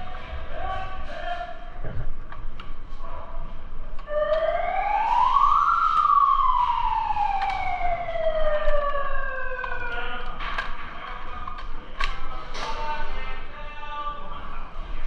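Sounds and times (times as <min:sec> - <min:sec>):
siren winding up and down: 0:04.0 - 0:10.2.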